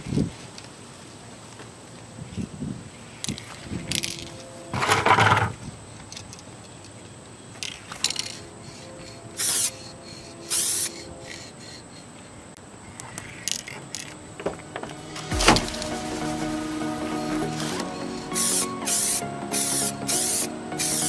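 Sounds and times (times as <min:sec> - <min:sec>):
aerosol spray can hissing: 0:09.4 - 0:09.8, 0:10.5 - 0:11.0, 0:15.6 - 0:21.0.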